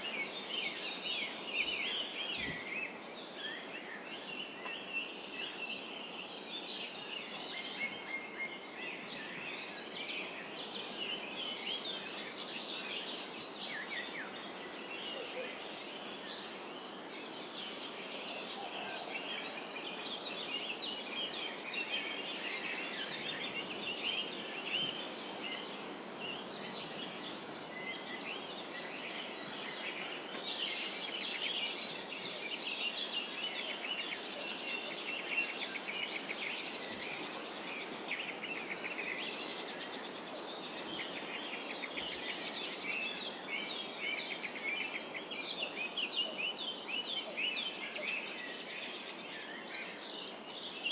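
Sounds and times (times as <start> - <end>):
many birds chirping and trilling: 0.0 - 50.9
steady background hiss: 0.0 - 50.9.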